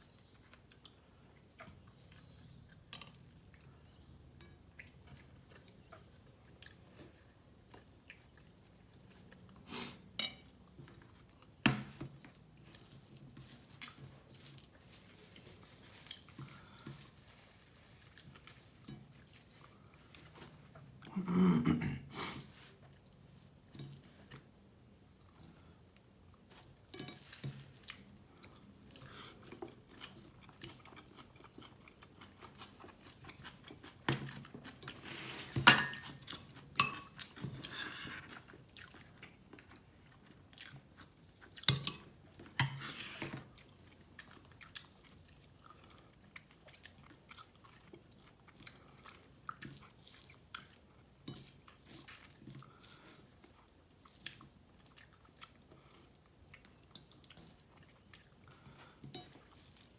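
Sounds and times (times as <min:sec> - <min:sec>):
person chewing: 0:25.2 - 0:35.2, 0:36.0 - 0:59.9.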